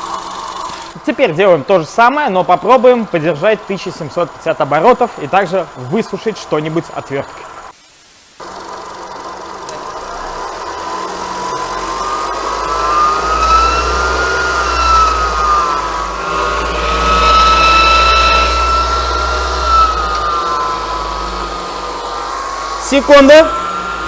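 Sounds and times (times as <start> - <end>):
high whine from engine accessories: 0.0 - 7.8, 8.4 - 24.0
engine low hum: 8.4 - 24.0.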